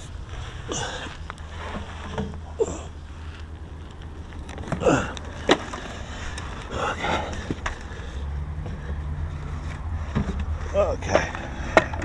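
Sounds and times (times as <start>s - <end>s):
steady low hum: 0.0s - 12.0s
handling creaks and clicks: 1.0s - 10.6s.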